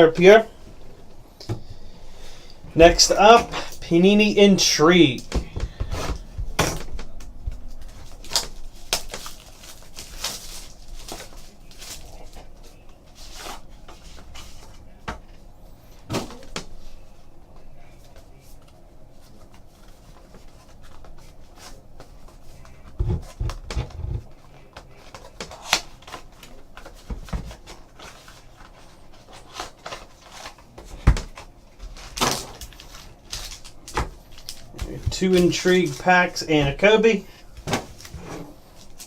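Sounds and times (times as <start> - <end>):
cardboard and wrapper rustling: 5.1 - 15.0, 18.0 - 36.2, 37.0 - 39.0.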